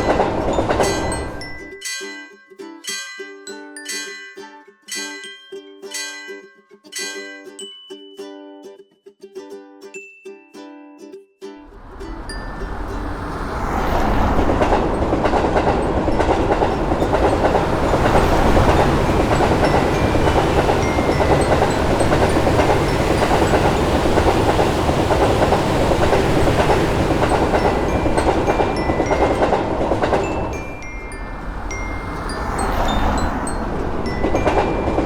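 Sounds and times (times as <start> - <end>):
wheel clatter on rails: 0.0 - 1.7, 12.2 - 35.0
train rumbling past: 0.0 - 1.8, 11.6 - 35.0.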